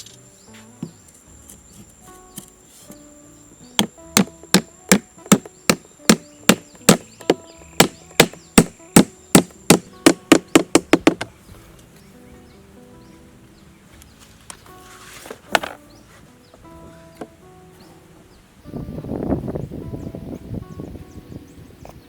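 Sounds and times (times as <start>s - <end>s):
sharp blows on wood: 3.8s - 11.3s.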